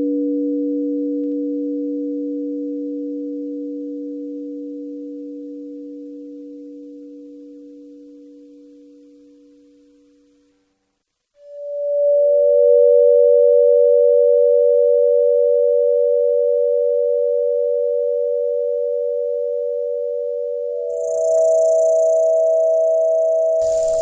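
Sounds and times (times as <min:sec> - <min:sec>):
pure tones: 0:20.8 - 0:24.0
high hiss: 0:23.6 - 0:24.0.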